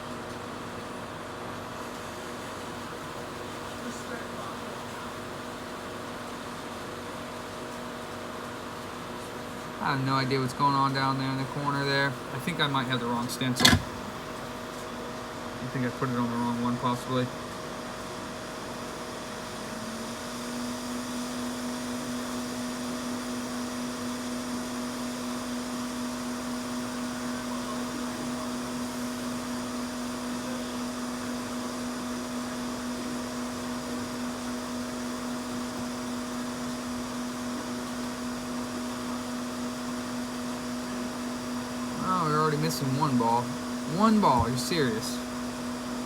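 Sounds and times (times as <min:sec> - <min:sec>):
hot-air gun blowing: 0:42.0 - 0:45.3.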